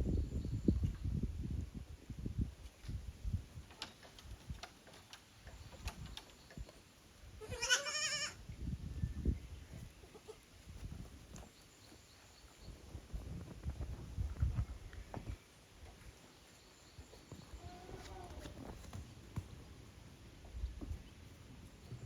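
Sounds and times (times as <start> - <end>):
goat bleating: 7.4 - 8.4.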